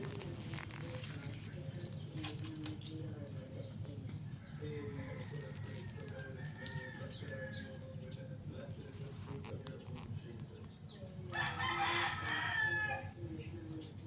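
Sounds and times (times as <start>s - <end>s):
small birds chirping: 0.0s - 14.0s
rooster crowing: 4.4s - 8.0s, 11.3s - 13.2s.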